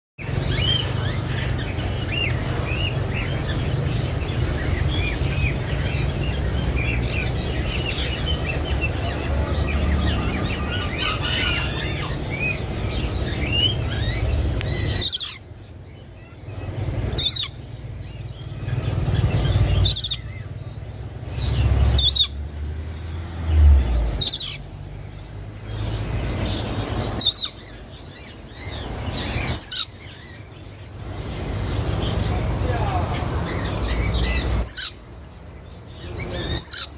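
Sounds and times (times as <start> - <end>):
small bird chirps: 0.2 - 36.9
parakeet shrill calls: 13.3 - 15.5, 17.2 - 17.6, 19.7 - 20.4, 22.0 - 22.4, 24.1 - 24.6, 27.2 - 30.3, 33.5 - 35.0, 36.4 - 36.9.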